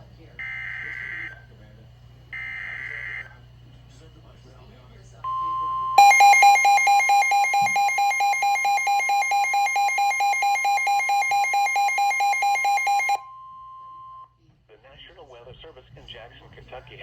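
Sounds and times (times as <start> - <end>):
electronic alarm beeping: 0.4 - 1.4, 2.4 - 3.4, 5.2 - 14.3
steady high alert tone: 5.3 - 14.3.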